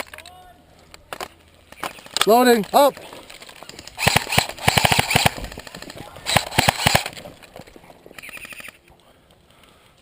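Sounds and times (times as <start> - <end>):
airsoft rifle firing full auto: 4.0 - 7.2.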